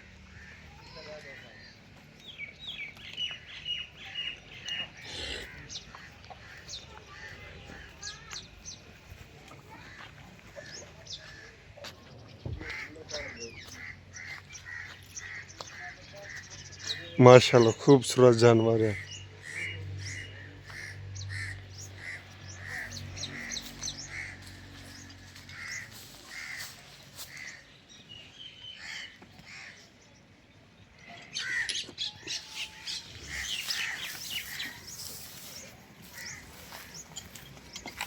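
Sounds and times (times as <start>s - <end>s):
crows cawing: 0.0s - 1.7s, 5.0s - 8.3s, 12.5s - 17.2s, 18.9s - 27.6s, 28.8s - 29.9s, 31.2s - 38.0s
small birds chirping: 0.0s - 38.0s.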